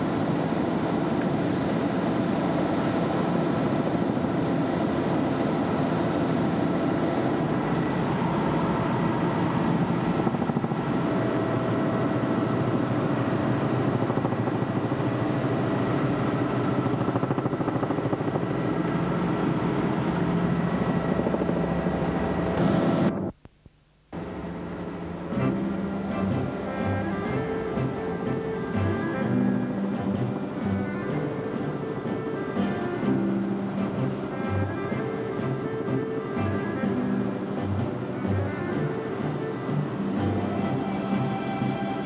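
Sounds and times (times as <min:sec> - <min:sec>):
helicopter running: 0:00.0 - 0:23.3, 0:24.2 - 0:42.0
constant whine: 0:00.0 - 0:42.0.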